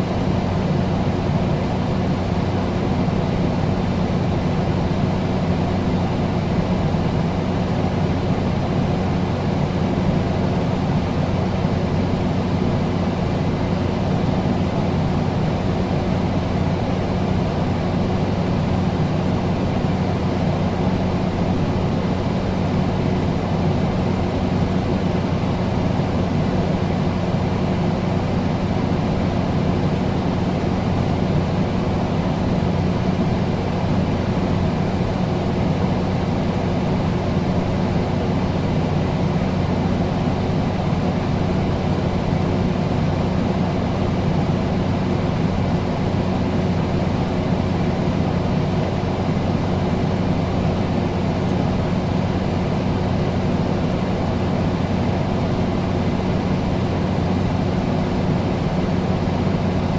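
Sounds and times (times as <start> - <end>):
air conditioner whirring: 0.0 - 59.9.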